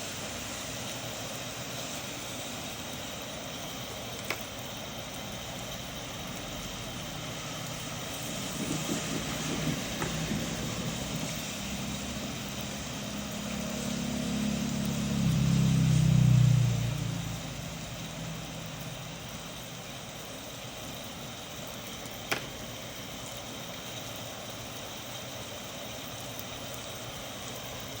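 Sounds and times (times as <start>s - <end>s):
steady hiss: 0.0s - 28.0s
thunder rumbling: 7.7s - 13.4s.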